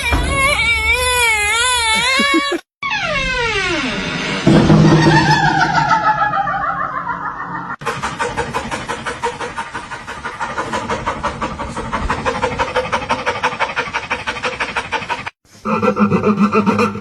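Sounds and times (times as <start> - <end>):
rapid panting: 7.8 - 15.4.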